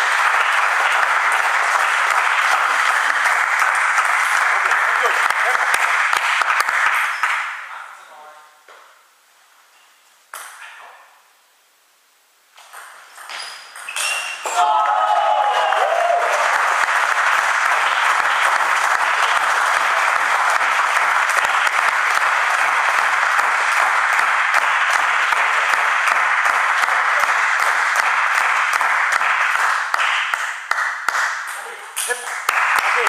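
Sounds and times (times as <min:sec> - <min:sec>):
spectators applauding: 0:00.0 - 0:07.7, 0:14.5 - 0:33.0.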